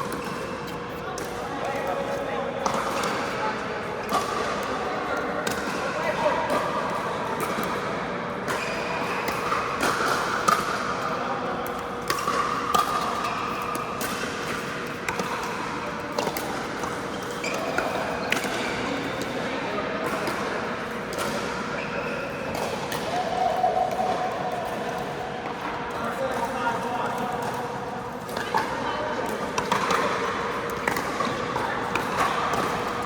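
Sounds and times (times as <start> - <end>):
background din of hall: 0.0 - 33.0
ball bouncing on indoor court: 11.6 - 19.4, 29.2 - 33.0.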